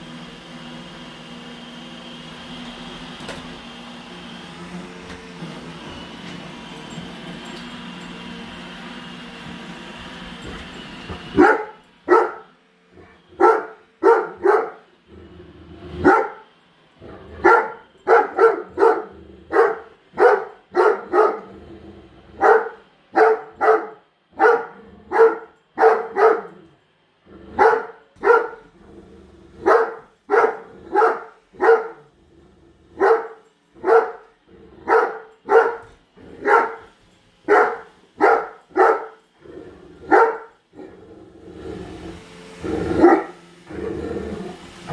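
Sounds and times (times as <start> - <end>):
large dog barking: 11.3 - 14.8, 15.9 - 16.4, 17.3 - 21.6, 22.4 - 26.7, 27.5 - 28.7, 29.6 - 32.1, 32.9 - 41.0, 42.6 - 43.9.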